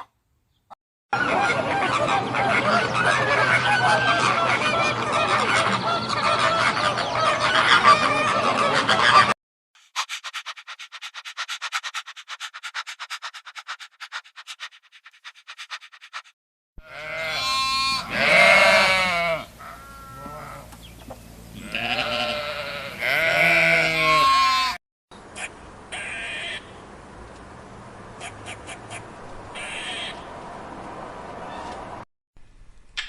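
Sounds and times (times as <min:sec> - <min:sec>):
goat bleating: 0:16.8 - 0:20.7, 0:21.5 - 0:24.8, 0:26.0 - 0:26.6.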